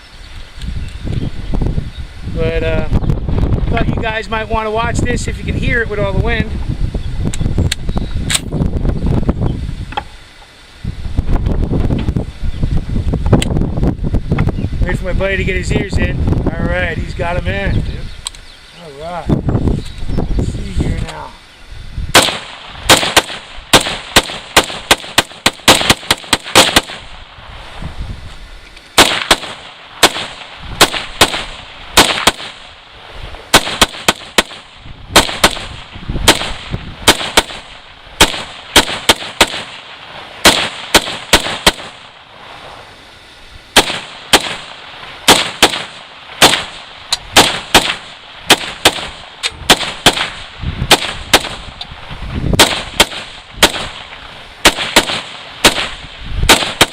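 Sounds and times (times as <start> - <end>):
rifle firing rapid shots: 22.2 - 27.1, 29.0 - 32.7, 33.5 - 42.1, 43.8 - 51.7, 52.6 - 56.9.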